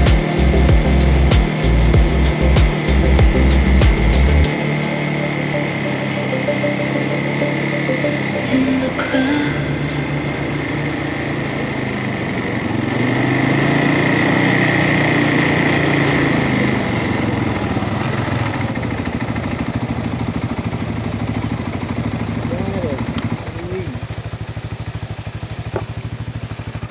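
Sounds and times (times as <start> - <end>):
atv engine running: 0.0 - 6.0, 10.2 - 26.9
steady high whine: 0.0 - 12.9.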